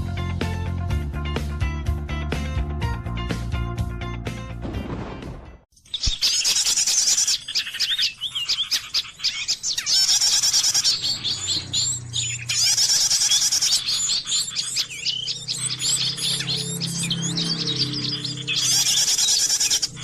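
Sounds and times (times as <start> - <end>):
many small birds chirping: 5.8 - 20.0.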